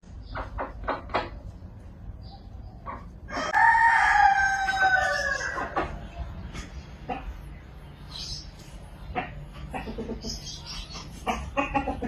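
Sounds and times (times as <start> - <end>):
chickens clucking: 0.0 - 12.0
rooster crowing: 3.3 - 5.8.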